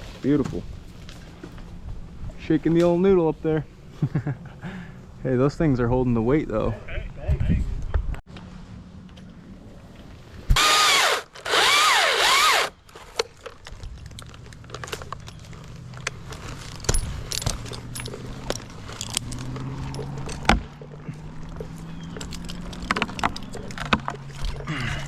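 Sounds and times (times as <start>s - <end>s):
chainsaw cutting: 10.6s - 12.8s
low engine hum: 13.8s - 25.0s.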